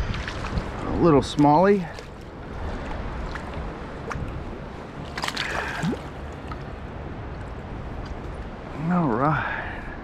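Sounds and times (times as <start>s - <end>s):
small water splashes: 0.0s - 6.8s
creek water sloshing and trickling: 0.0s - 9.0s
flowing water rushing: 0.0s - 9.4s.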